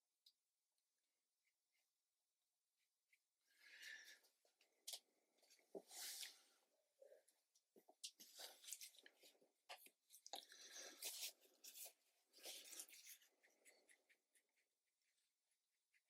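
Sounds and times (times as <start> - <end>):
paintbrush scratching on paper: 10.6 - 16.0.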